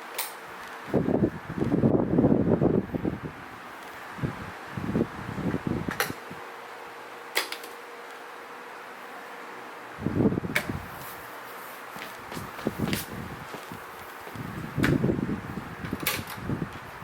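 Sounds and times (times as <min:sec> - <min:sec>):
table fan humming: 0:00.0 - 0:17.0
air buffeting microphone: 0:00.8 - 0:06.4, 0:10.0 - 0:17.0.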